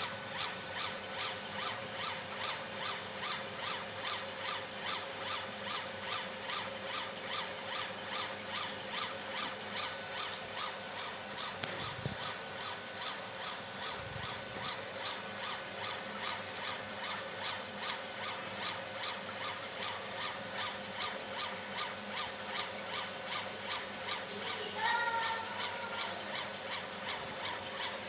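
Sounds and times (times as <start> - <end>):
laser carriage sweeping back and forth: 0.0 - 21.2.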